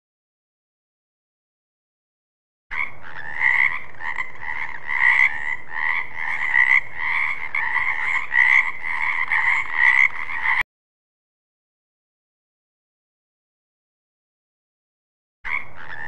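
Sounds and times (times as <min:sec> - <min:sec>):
frogs croaking: 0:02.7 - 0:10.6, 0:15.5 - 0:16.0.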